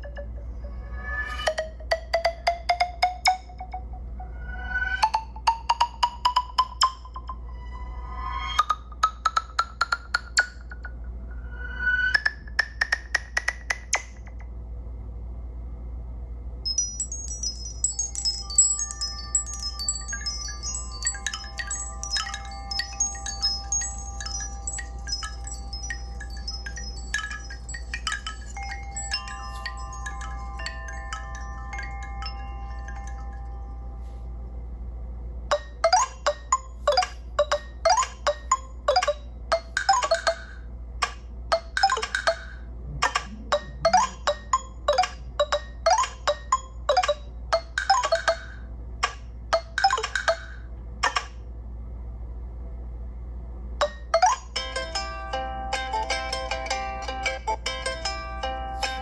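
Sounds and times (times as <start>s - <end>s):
chime-like ringtone twinkling notes: 0.0s - 8.8s, 16.7s - 34.2s, 35.5s - 40.6s, 43.5s - 48.6s, 58.7s - 59.0s
ringtone of sharply struck notes: 4.8s - 7.7s, 16.7s - 34.2s, 35.5s - 40.6s, 41.5s - 48.6s.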